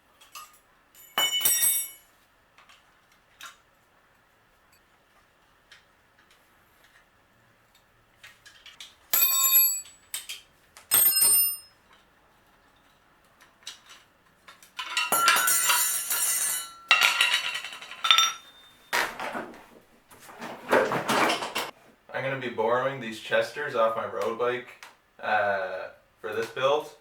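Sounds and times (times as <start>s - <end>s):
ringing metal clinks: 0.3s - 2.1s, 9.1s - 10.2s, 10.9s - 11.8s, 14.9s - 19.0s
metallic rattling clatter: 14.8s - 19.6s.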